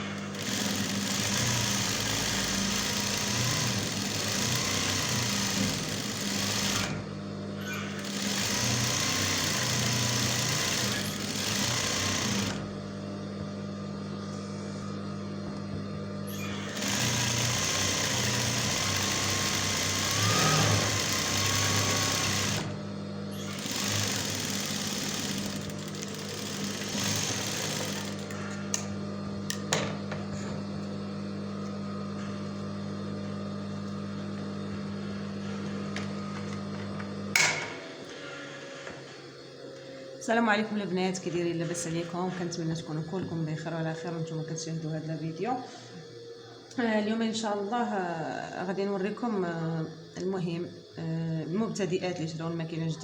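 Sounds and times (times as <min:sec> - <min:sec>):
sewing machine stitching: 0:00.1 - 0:07.1, 0:07.7 - 0:12.7, 0:16.3 - 0:22.8, 0:23.4 - 0:28.4.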